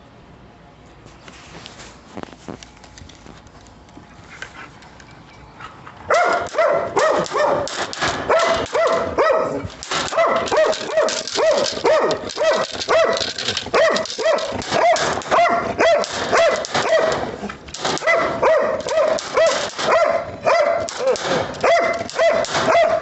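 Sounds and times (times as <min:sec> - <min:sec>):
dog barking rapidly: 0:06.1 - 0:23.0.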